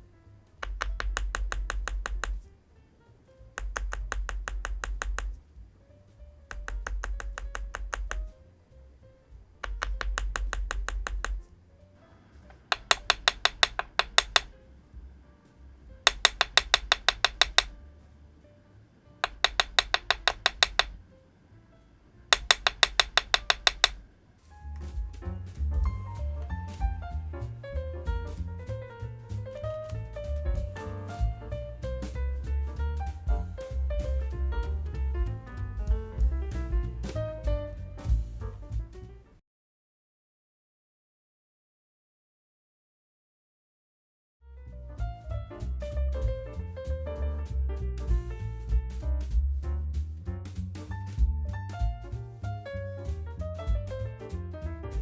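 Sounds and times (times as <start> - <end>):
mechanical keyboard typing: 0.6 - 2.5, 3.6 - 5.4, 6.5 - 8.3, 9.6 - 11.5, 12.5 - 14.6, 16.0 - 17.8, 19.2 - 21.0, 22.3 - 24.0.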